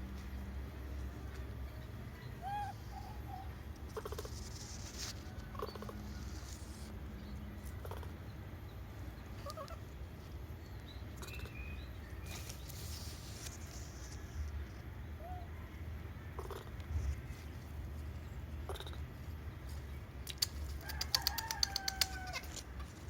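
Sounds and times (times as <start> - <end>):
squeaky animal calls: 2.4 - 4.3.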